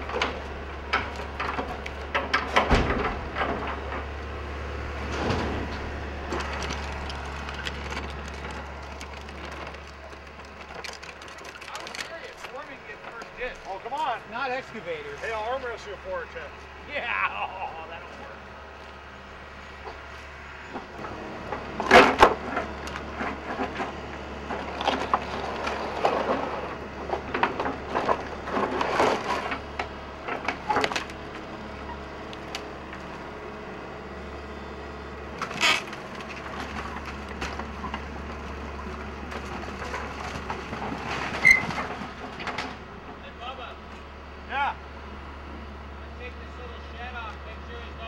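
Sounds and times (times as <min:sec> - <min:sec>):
wood and debris cracking: 0:00.0 - 0:15.5, 0:19.8 - 0:33.3, 0:35.2 - 0:43.2
steady low hum: 0:00.0 - 0:48.0.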